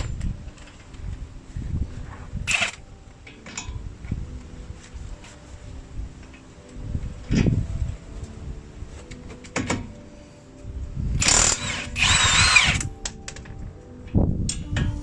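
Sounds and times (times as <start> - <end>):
power tool motor whine: 11.2 - 12.9.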